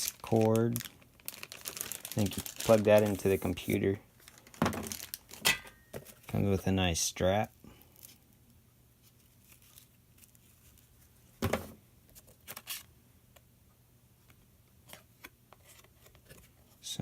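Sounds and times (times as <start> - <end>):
faint steady hum: 0.0 - 17.0
packaging rustling and knocking: 0.1 - 6.4, 11.4 - 11.8.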